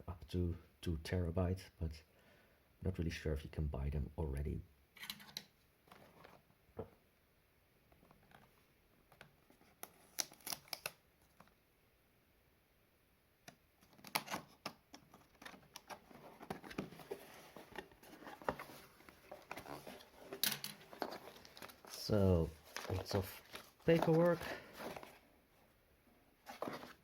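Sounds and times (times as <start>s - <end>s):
cardboard and paper rustling: 13.8s - 25.7s, 26.4s - 27.0s.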